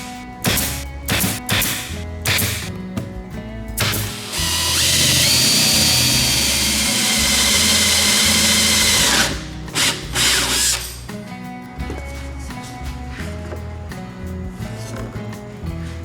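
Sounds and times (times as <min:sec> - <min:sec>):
power tool whining: 0:00.0 - 0:02.7, 0:03.8 - 0:11.1
background music: 0:00.0 - 0:16.0.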